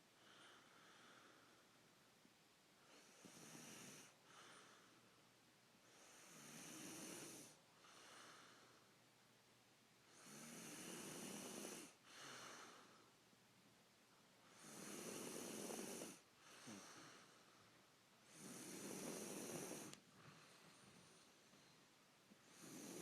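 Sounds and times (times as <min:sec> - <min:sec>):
man snoring: 0:02.9 - 0:04.7, 0:05.9 - 0:08.5, 0:10.1 - 0:12.9, 0:14.5 - 0:17.3, 0:18.3 - 0:20.0, 0:22.4 - 0:23.0.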